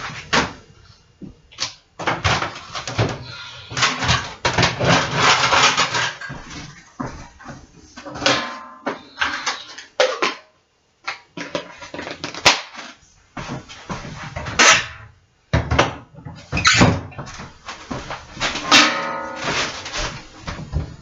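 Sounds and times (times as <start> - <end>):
dishwasher racks knocking: 2.0 - 9.8, 15.6 - 21.0.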